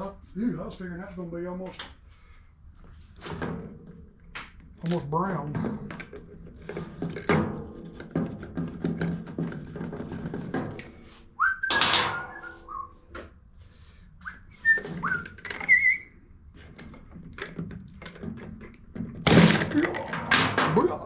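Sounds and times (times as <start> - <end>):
person whistling: 11.4 - 13.1, 14.2 - 16.2.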